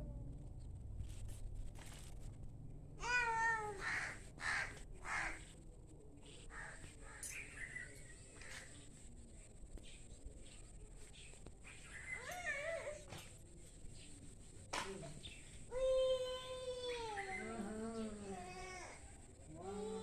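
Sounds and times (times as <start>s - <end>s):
crow cawing: 3.8s - 5.4s.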